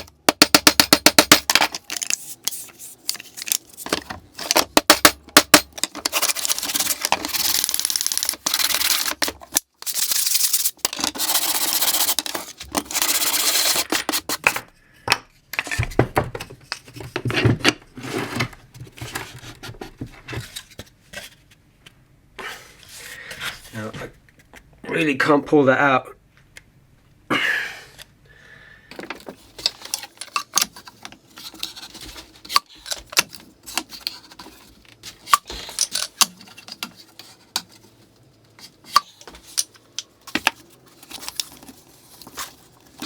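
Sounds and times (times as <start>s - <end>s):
sandpaper scratching wood: 6.1s - 14.5s.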